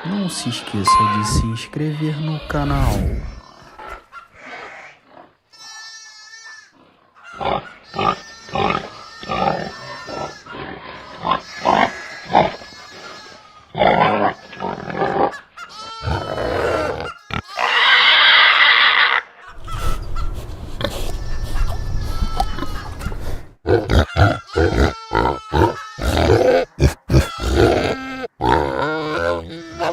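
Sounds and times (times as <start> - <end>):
pig squealing: 3.3 - 29.9
pigs grunting: 6.7 - 20.0, 20.8 - 29.9.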